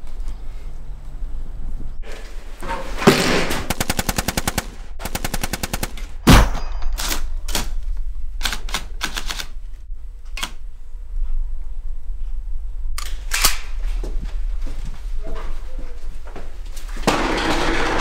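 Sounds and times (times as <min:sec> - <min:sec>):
automatic gunfire: 0:03.2 - 0:07.7
loud bang: 0:06.2 - 0:07.4.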